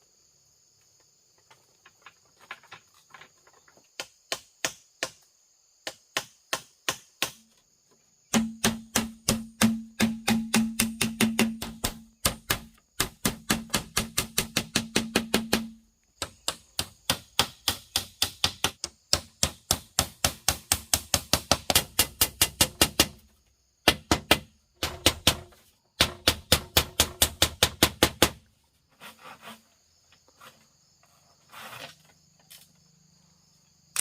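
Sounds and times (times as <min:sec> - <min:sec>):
wood being chopped: 0:08.3 - 0:23.2.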